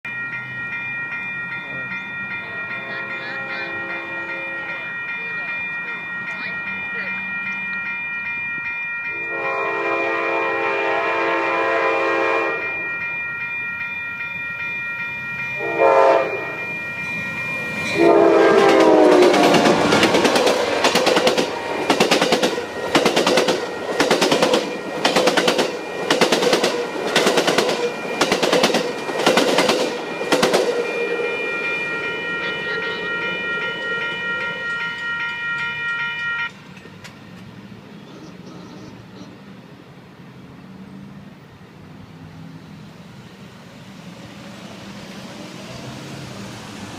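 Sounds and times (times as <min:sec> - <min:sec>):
steady high ringing: 0:00.0 - 0:37.3
train cars rushing past: 0:00.1 - 0:46.9
train horn blasts: 0:02.8 - 0:04.8, 0:09.1 - 0:12.8, 0:15.6 - 0:16.6, 0:17.9 - 0:22.6
train wheels over rail joints: 0:16.4 - 0:38.7.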